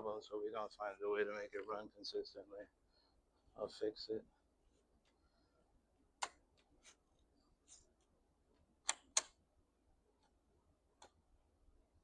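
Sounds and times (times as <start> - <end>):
sharp clicks: 8.8 - 9.4.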